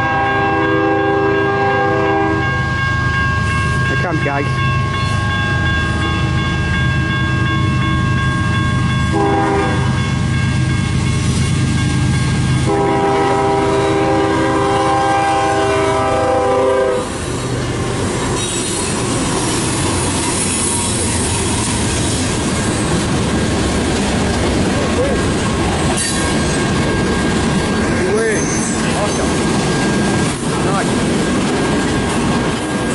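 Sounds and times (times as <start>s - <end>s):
train air horn blasts: 0.0s - 2.6s, 9.1s - 10.0s, 12.6s - 17.2s
locomotive engine rumble: 5.2s - 32.9s.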